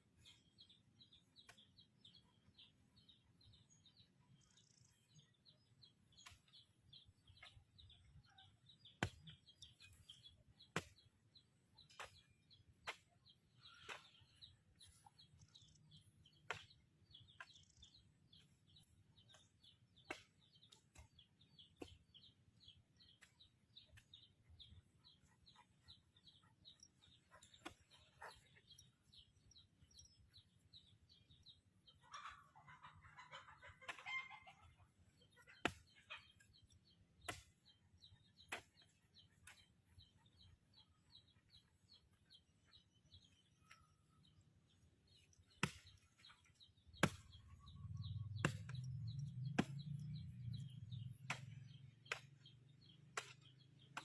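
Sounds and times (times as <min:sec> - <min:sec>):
high bird chirps: 0:45.2 - 0:54.0.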